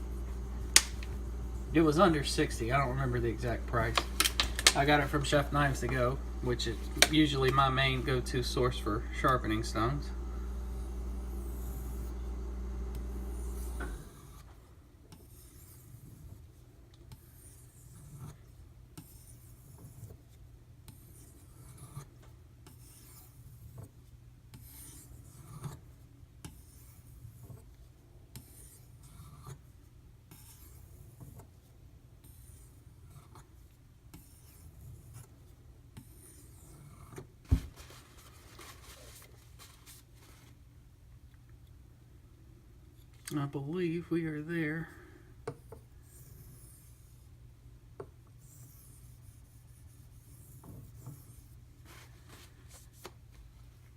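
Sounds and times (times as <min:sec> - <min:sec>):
steady low hum: 0:00.0 - 0:53.9
knife blade rasping on whetstone: 0:22.7 - 0:23.6.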